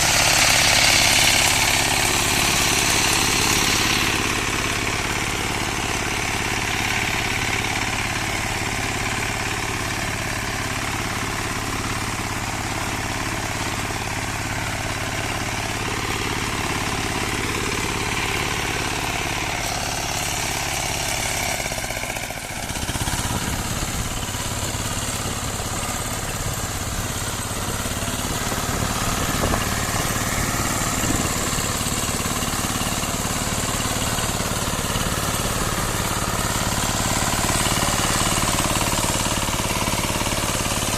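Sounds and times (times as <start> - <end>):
rotary tiller working soil: 0.0 - 40.9
walk-behind tractor engine running: 0.0 - 40.9.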